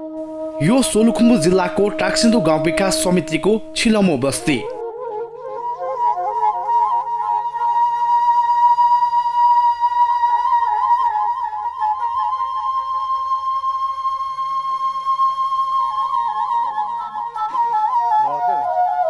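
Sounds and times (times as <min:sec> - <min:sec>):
flute-like melody: 0:00.0 - 0:19.0.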